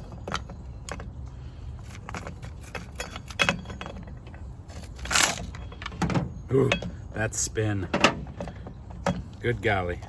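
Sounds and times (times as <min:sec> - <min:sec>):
recoil starter parts clicking: 0:04.8 - 0:06.0.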